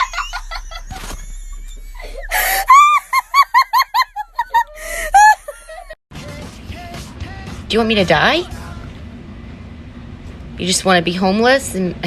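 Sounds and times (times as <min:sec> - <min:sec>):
high-pitched shrieking laughter: 0:00.0 - 0:05.9.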